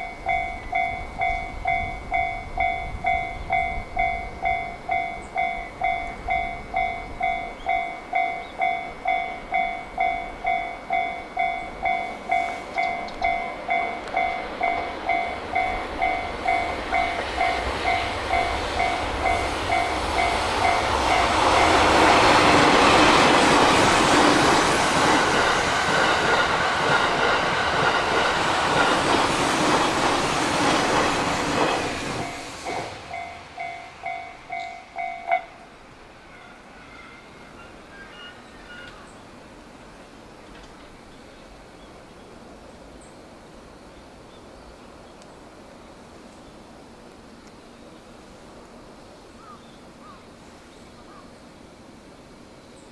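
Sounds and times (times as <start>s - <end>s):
level-crossing warning bell dings: 0.0s - 39.3s
train wheel and rail noise: 0.0s - 52.9s.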